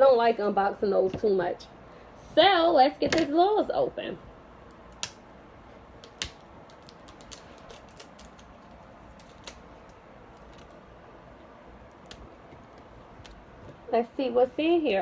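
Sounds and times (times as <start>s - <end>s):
plastic toy package clicking: 6.0s - 10.8s.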